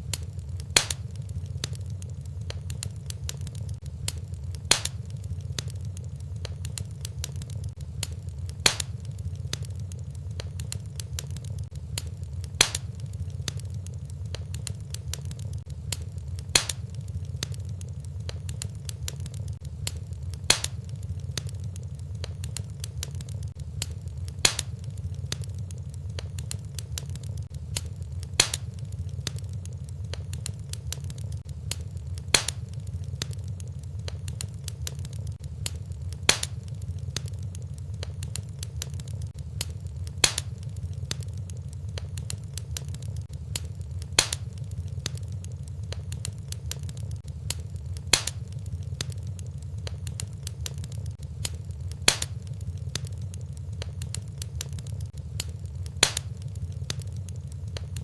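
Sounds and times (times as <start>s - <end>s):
fireplace fire crackling: 0.0s - 58.0s
fire sharp pop: 0.1s - 2.7s, 3.3s - 5.8s, 7.8s - 9.7s, 12.0s - 13.7s, 15.9s - 17.6s, 19.8s - 21.5s, 23.8s - 25.5s, 27.8s - 29.4s, 31.7s - 33.4s, 35.6s - 37.3s, 39.6s - 41.3s, 43.6s - 45.2s, 47.5s - 49.2s, 51.4s - 53.1s, 55.4s - 57.0s.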